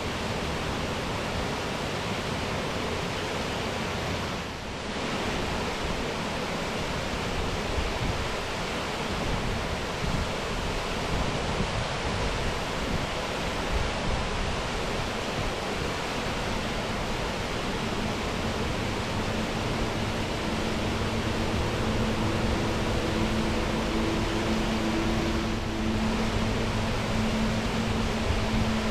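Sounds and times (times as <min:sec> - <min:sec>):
waterfall rushing: 0:00.0 - 0:28.9
low motor-like hum: 0:16.4 - 0:28.9.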